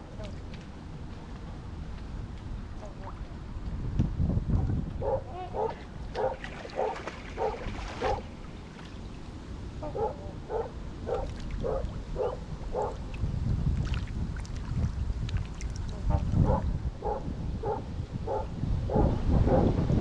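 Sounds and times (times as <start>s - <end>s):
large waterfowl honking: 9.8s - 11.2s.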